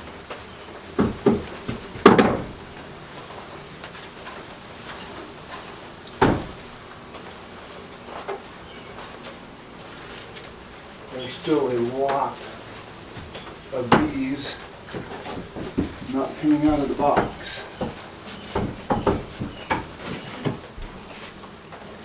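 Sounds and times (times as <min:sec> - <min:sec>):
wooden box thumping: 0:01.0 - 0:02.6, 0:14.9 - 0:20.7.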